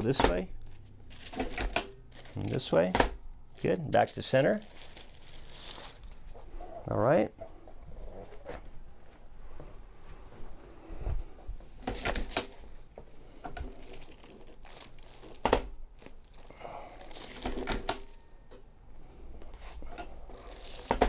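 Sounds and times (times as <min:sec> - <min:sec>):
soft rustling: 0:03.5 - 0:11.8.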